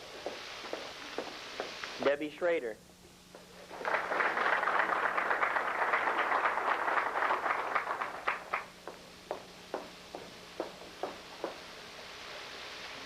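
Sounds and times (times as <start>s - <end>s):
audience applauding: 3.6s - 8.7s.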